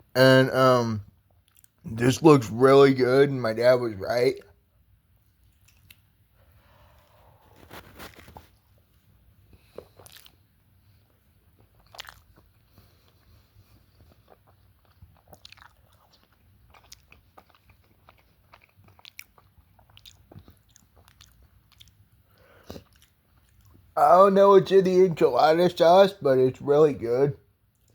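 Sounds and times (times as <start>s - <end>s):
person chewing crunchy food: 1.3s - 1.8s, 6.8s - 8.8s, 9.5s - 10.5s, 11.1s - 24.0s.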